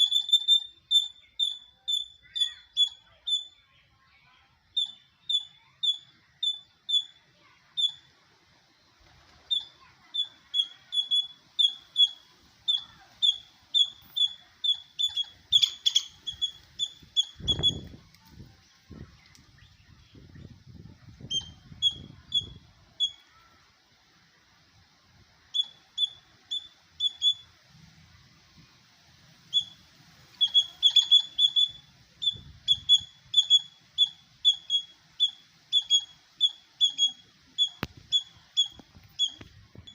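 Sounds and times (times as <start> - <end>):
squirrel chirping: 0.0 - 3.7, 4.7 - 7.2, 7.8 - 8.1, 9.5 - 18.0, 21.2 - 23.4, 25.5 - 27.5, 29.5 - 39.9.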